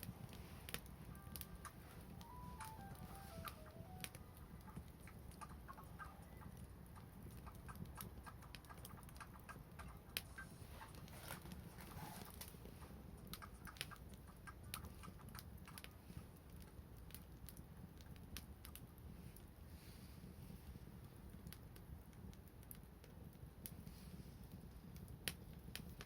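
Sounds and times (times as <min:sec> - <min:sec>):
wood fire crackling and popping: 0:00.0 - 0:26.0.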